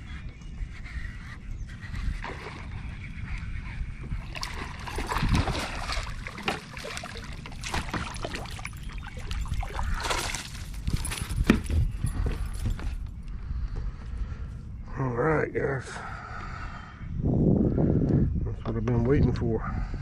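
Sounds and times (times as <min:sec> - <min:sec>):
wind buffeting microphone: 0:00.0 - 0:20.0
water splashing and sloshing: 0:01.9 - 0:13.1.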